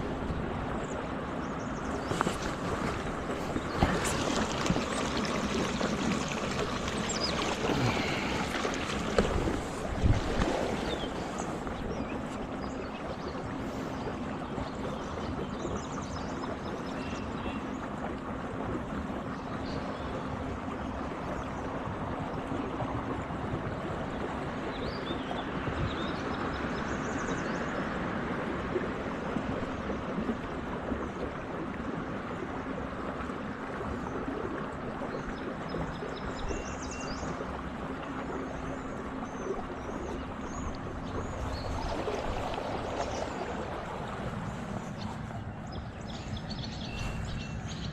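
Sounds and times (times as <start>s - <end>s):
river water rushing: 1.3s - 12.9s, 40.3s - 47.9s.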